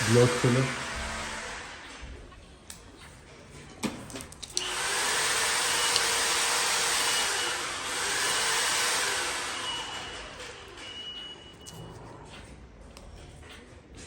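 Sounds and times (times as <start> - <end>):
machine rushing noise: 0.0 - 2.2.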